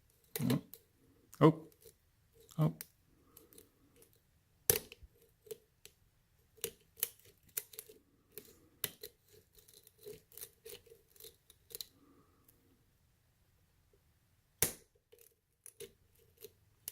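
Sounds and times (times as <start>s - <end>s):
lock pick clicking and scraping: 3.3s - 12.0s, 14.6s - 16.9s.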